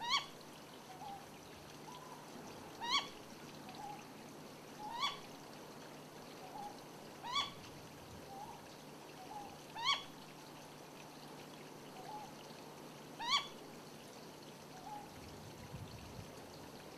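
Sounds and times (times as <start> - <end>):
owl calling: 0.0 - 1.2, 2.8 - 4.0, 4.8 - 5.3, 6.4 - 7.6, 9.2 - 10.1, 13.2 - 13.6.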